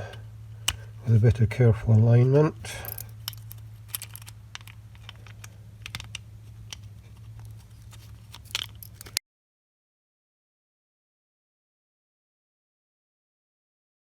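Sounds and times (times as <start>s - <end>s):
steady low hum: 0.0s - 9.2s
plastic housing clicks and taps: 2.9s - 7.5s.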